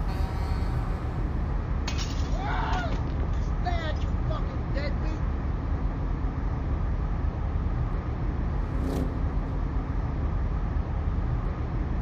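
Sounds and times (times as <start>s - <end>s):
road traffic rumble: 3.0s - 12.0s.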